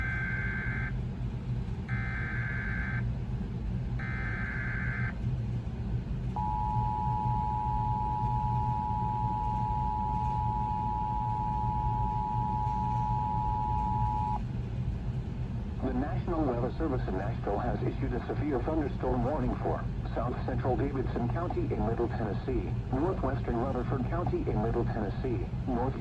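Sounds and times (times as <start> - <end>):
two-tone attention signal: 6.4 - 14.4
warbling data bursts: 6.4 - 14.4.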